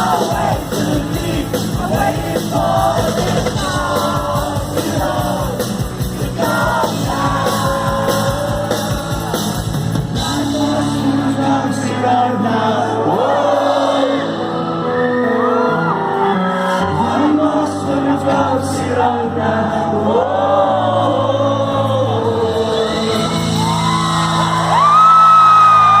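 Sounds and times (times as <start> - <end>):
live rock band playing: 0.0 - 19.6, 21.4 - 26.0
man singing: 0.0 - 24.0
audience yelling: 22.7 - 26.0.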